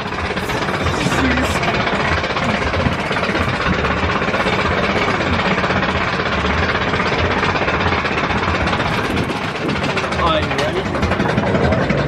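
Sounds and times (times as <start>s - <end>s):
pulsing low hum: 0.0s - 12.0s.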